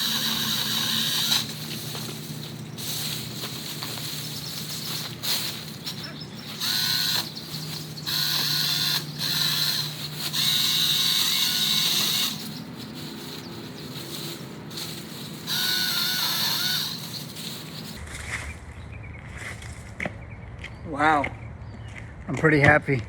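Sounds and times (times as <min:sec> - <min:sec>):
electric chainsaw cutting branch: 0:00.0 - 0:18.0.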